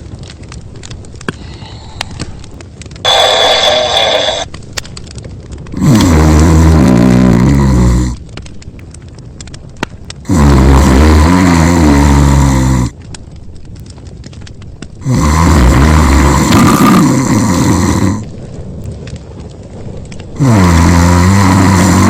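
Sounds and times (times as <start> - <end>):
cartoon character snoring: 5.8 - 8.2, 10.3 - 12.9, 15.0 - 18.2, 20.4 - 22.0.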